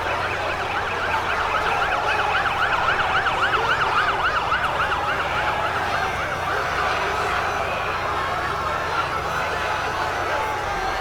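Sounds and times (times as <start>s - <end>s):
siren yelping: 0.0s - 6.6s
crowd noise: 0.0s - 11.0s.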